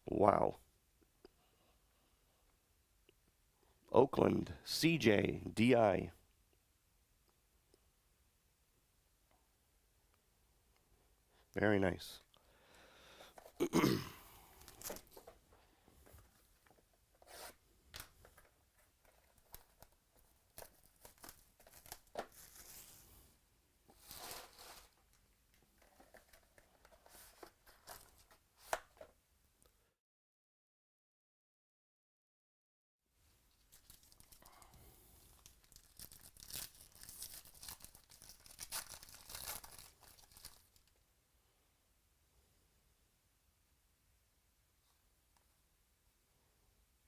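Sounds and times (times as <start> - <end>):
packaging crinkling: 14.5 - 15.4, 17.3 - 23.0, 33.5 - 40.9.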